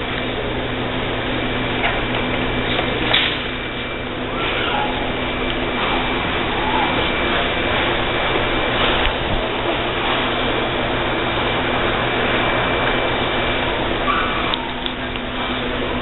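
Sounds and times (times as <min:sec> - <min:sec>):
low hum: 0:00.0 - 0:16.0
steady rushing noise: 0:05.0 - 0:14.1.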